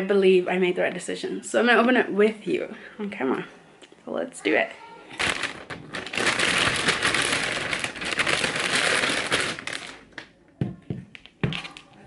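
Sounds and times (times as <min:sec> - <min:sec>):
packaging crinkling: 0:05.1 - 0:10.3.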